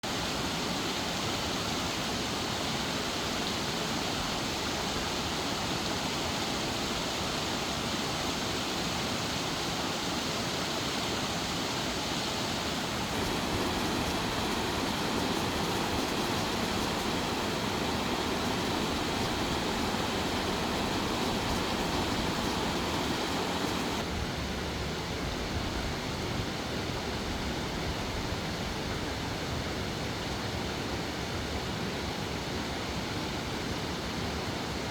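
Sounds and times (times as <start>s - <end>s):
stream water rushing: 0.1s - 24.2s.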